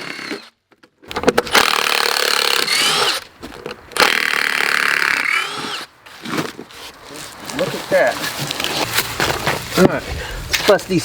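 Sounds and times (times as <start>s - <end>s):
cordless drill whining: 0.0s - 0.5s, 1.5s - 3.3s, 4.0s - 6.4s.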